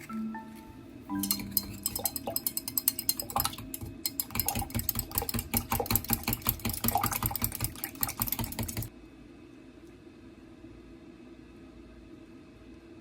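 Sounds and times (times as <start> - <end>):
kitchen utensils tapping and clicking: 1.1 - 8.9.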